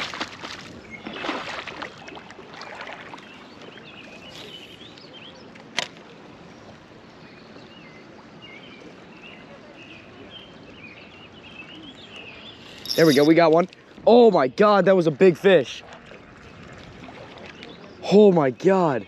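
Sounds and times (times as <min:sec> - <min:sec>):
river water splashing: 0:00.0 - 0:19.0
birds chirping: 0:03.0 - 0:05.5, 0:07.2 - 0:15.0
faint outdoor hiss: 0:03.3 - 0:15.8.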